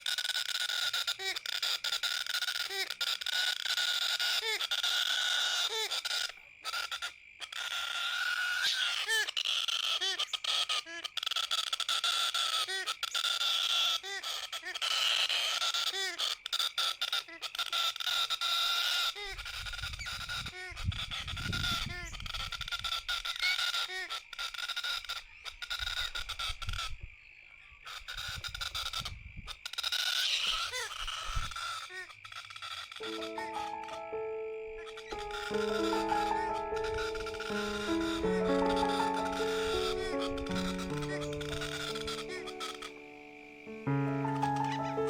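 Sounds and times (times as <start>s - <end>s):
wind rumble on microphone: 19.4s - 22.9s, 28.2s - 29.5s
young parrot harsh begging calls: 32.6s - 34.2s, 34.8s - 43.3s, 44.1s - 45.0s
background birds hiss: 32.6s - 45.0s.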